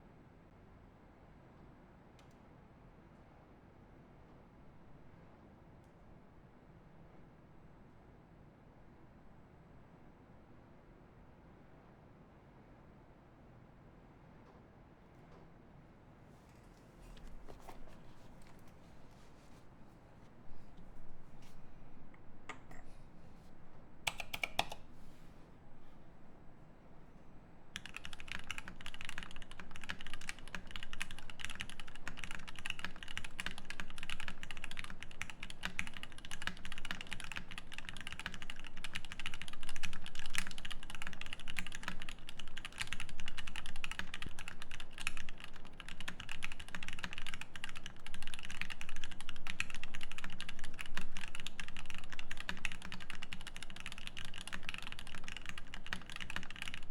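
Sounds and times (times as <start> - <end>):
fast mechanical keyboard typing: 24.1 - 24.8, 27.8 - 56.9.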